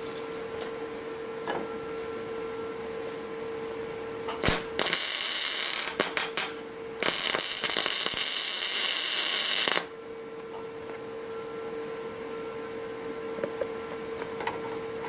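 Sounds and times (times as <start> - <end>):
welder hum: 4.3 - 10.0
welding arc crackling: 4.4 - 10.0.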